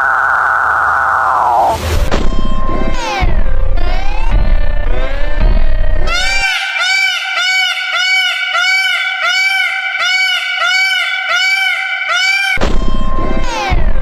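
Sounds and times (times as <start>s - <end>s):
animal giving high cries: 6.1s - 12.6s.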